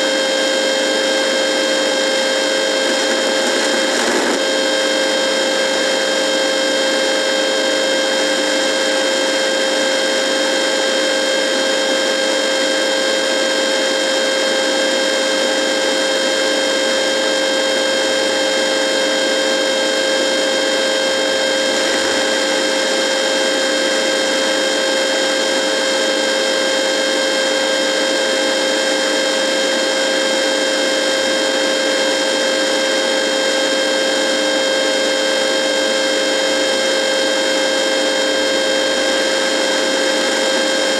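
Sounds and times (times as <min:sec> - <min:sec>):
radio electrical buzz: 0:00.0 - 0:10.4, 0:17.6 - 0:28.4, 0:35.6 - 0:40.9.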